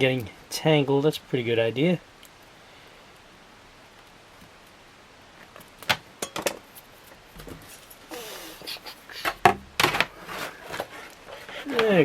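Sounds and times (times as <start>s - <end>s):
rustle and scrape: 3.9s - 12.0s.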